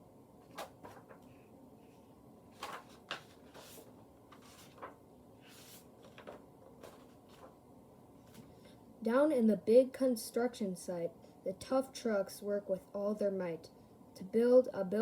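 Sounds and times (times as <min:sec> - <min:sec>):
book pages turning: 0:00.4 - 0:01.4, 0:02.5 - 0:07.6.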